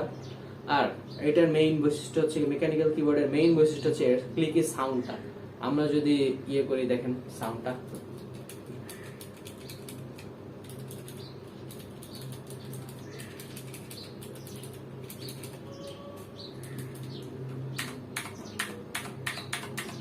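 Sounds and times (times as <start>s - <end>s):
mechanical keyboard typing clicks: 7.9s - 20.0s.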